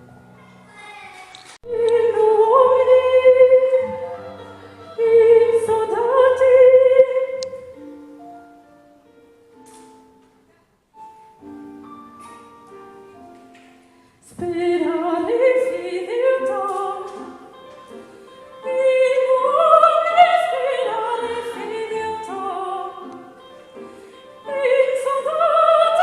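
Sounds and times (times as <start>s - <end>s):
operatic singing with vibrato: 1.6s - 7.8s, 14.2s - 26.0s
keyboard accompaniment: 1.7s - 26.0s.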